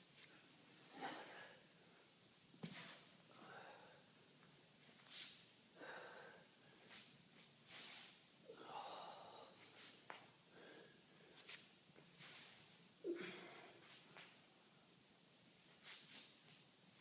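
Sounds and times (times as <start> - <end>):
person breathing hard: 3.3 - 4.1, 5.8 - 7.0, 8.5 - 11.5.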